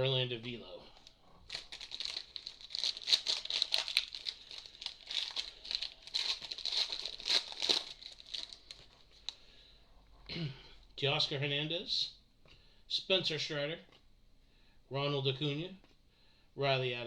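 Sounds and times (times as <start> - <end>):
foil wrapper crinkling and tearing: 1.0 - 9.4.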